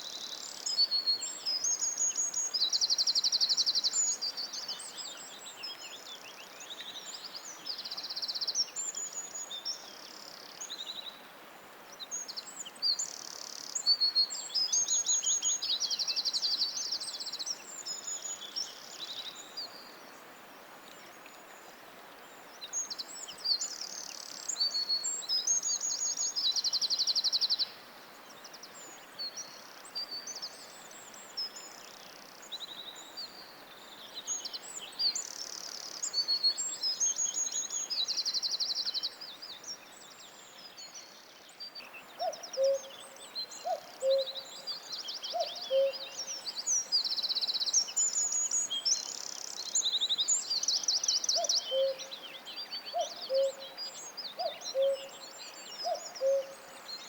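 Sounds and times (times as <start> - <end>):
faint steady hiss: 0.0 - 57.0
songbirds singing: 11.9 - 57.0.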